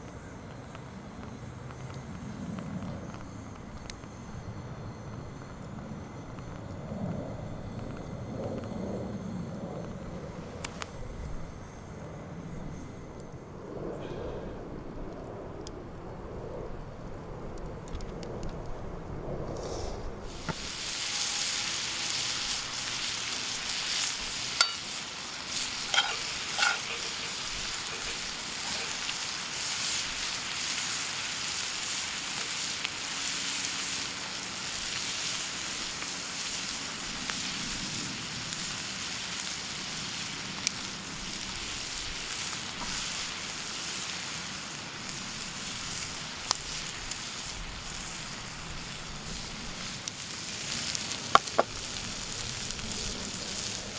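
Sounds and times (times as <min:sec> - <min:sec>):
food sizzling in a skillet: 0:20.3 - 0:53.9.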